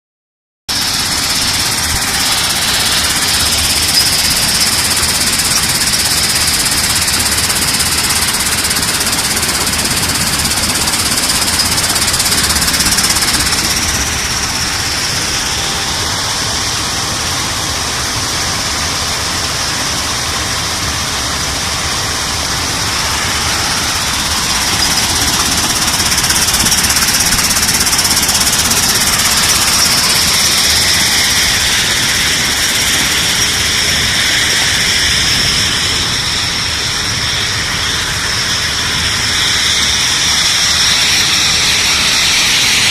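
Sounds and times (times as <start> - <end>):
high mechanical whine: 0.7 - 42.9
sand recycling machine running: 0.7 - 42.9.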